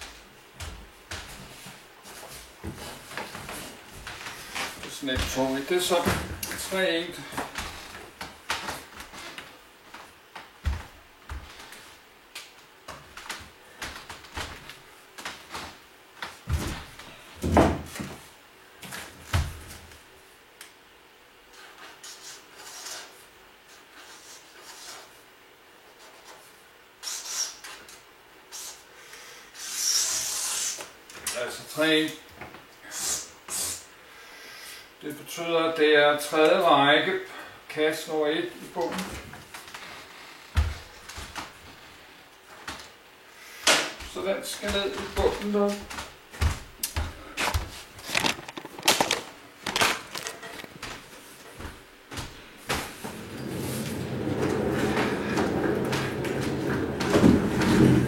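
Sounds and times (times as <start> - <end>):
box thumping and scraping: 48.0 - 50.8.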